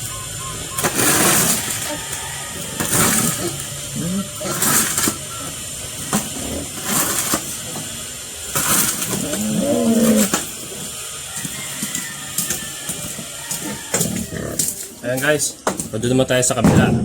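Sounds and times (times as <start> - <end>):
shovel scraping: 0.4 - 7.9, 8.5 - 15.9
pig grunting: 1.0 - 5.5, 6.1 - 7.9, 8.6 - 10.9, 12.9 - 15.2.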